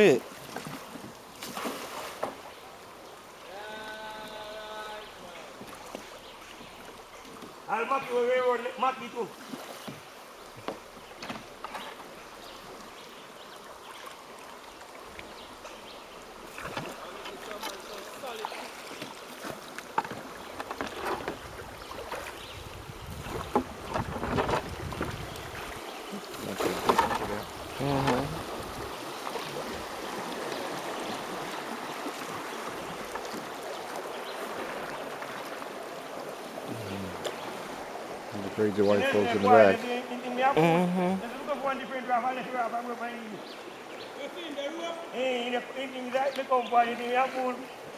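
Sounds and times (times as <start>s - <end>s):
faint ticks and splashes: 0.0s - 40.5s
river water running and lapping: 0.0s - 47.9s.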